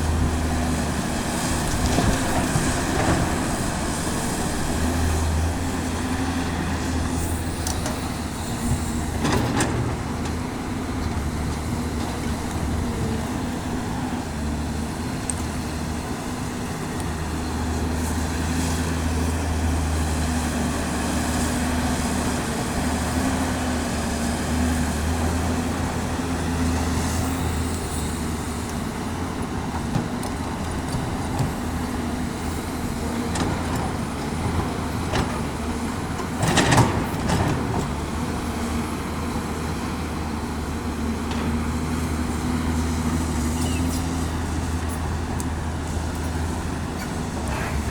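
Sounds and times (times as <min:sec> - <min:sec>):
excavator diesel engine running: 0:00.0 - 0:47.9.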